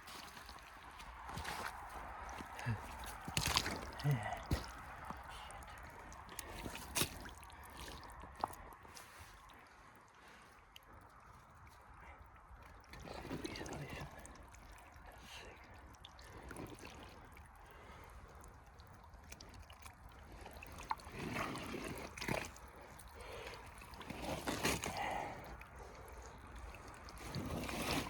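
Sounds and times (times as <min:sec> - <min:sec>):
rubber boots squelching in mud: 0:00.0 - 0:09.9, 0:12.9 - 0:28.0.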